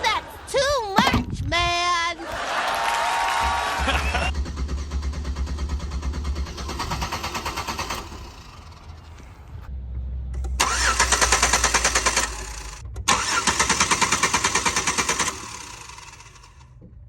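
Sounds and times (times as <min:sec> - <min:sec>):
starter motor cranking engine: 0:02.7 - 0:09.7, 0:10.3 - 0:16.9.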